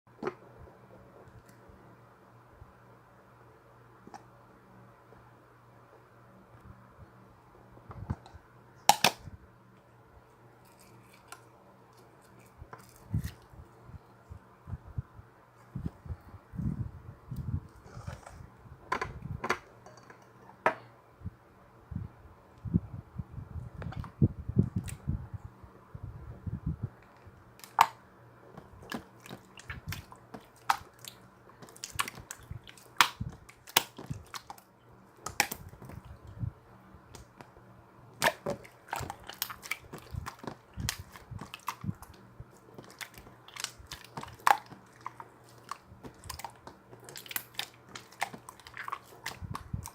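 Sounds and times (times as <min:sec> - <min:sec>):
faint steady hum: 0:00.1 - 0:49.9
slime squishing: 0:27.6 - 0:36.3, 0:38.2 - 0:49.9.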